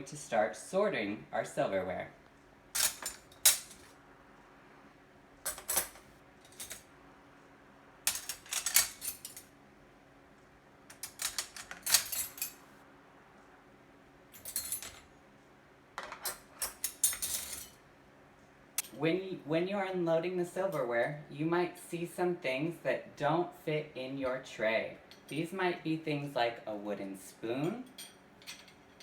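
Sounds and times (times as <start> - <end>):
silverware clinking and rattling: 2.8 - 3.9, 5.4 - 6.9, 8.1 - 9.5, 10.9 - 12.6, 14.4 - 15.1, 16.0 - 17.8, 25.1 - 25.4, 27.6 - 29.0.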